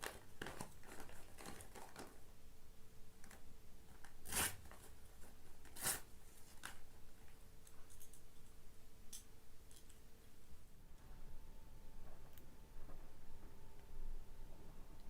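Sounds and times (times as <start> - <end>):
toy packaging clicks and crinkles: 0.0 - 2.2.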